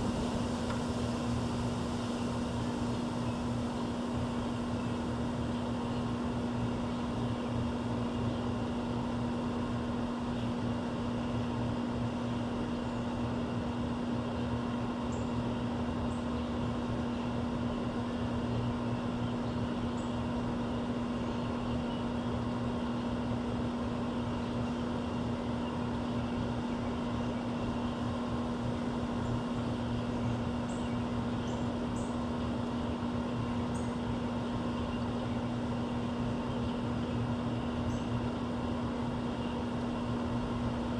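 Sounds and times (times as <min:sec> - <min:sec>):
steady machine hum: 0:00.0 - 0:40.9
small birds chirping: 0:30.1 - 0:32.2.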